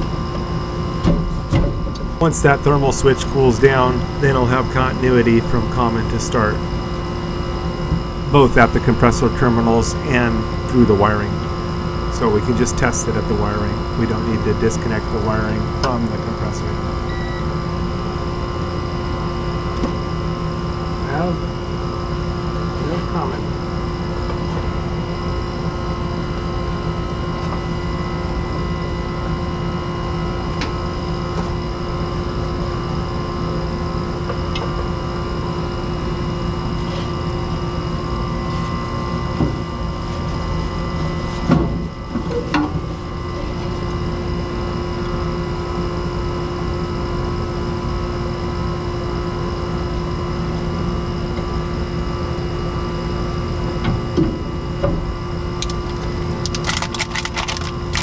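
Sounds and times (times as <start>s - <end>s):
machine drone over low rumble: 2.2s - 20.8s.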